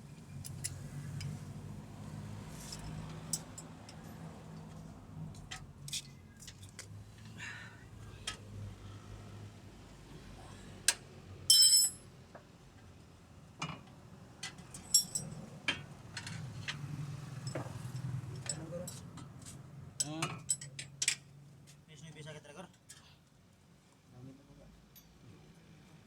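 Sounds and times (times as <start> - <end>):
metal tools clinking: 11.5 - 12.0, 14.8 - 15.4
loud ringing clink: 11.5 - 12.1.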